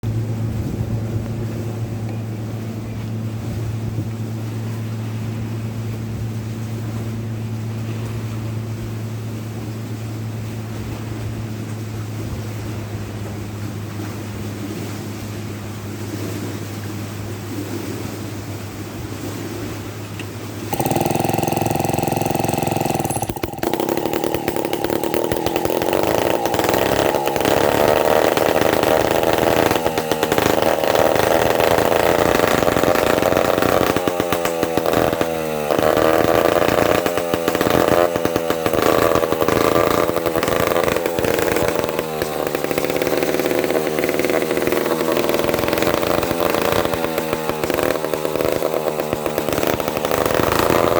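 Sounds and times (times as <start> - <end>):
chainsaw engine revving: 20.2 - 50.9.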